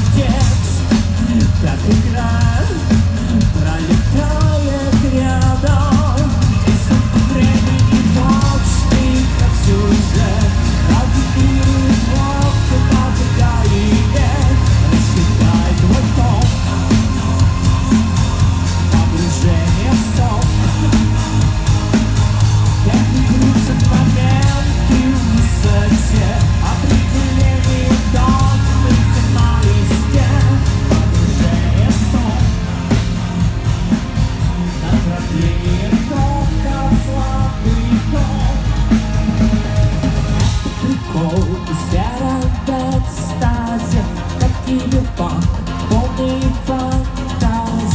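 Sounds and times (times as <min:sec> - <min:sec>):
person singing: 0:00.0 - 0:47.9
rock band playing live: 0:00.0 - 0:47.9.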